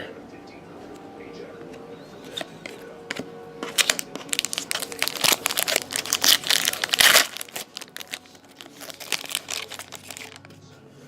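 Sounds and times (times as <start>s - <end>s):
card pack wrapper crinkling and tearing: 2.3s - 10.5s.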